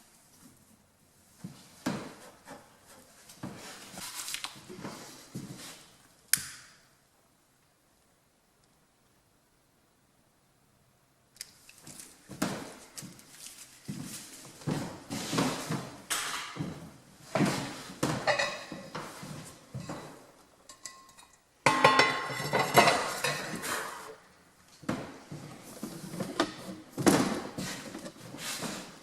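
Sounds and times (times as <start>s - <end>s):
metal clanking and scraping: 18.3s - 24.2s.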